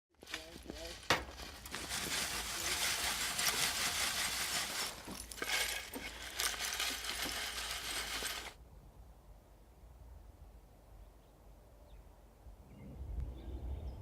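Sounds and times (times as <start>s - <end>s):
debris scraping and clinking: 0.2s - 8.6s.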